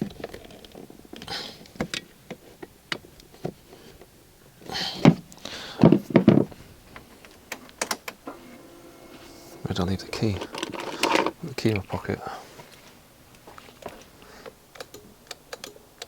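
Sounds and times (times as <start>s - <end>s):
small clicks and knocks: 0.0s - 4.1s
bumps and rustles of parts: 0.0s - 15.7s.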